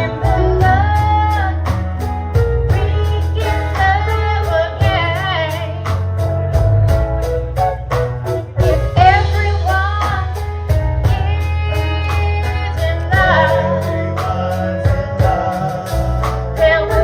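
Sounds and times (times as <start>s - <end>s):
bass line: 0.0s - 17.0s
guitar: 0.0s - 17.0s
drum beat: 5.9s - 17.0s
voices singing: 11.1s - 17.0s.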